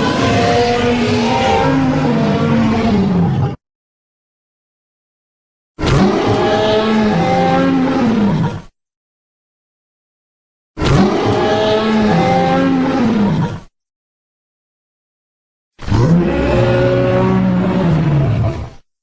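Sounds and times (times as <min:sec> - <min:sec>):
dinosaur roar: 0:00.0 - 0:03.6, 0:05.8 - 0:08.7, 0:10.8 - 0:13.7, 0:15.8 - 0:18.8.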